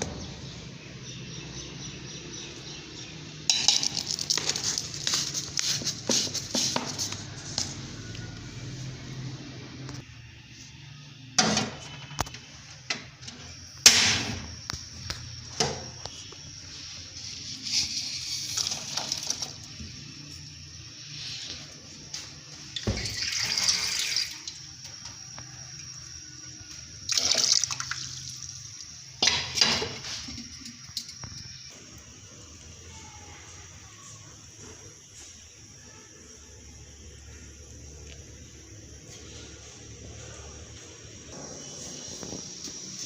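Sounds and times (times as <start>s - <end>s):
containers knocking and clattering: 3.5s - 7.1s
water pouring and sloshing: 17.8s - 19.7s, 22.8s - 24.6s, 27.0s - 29.0s.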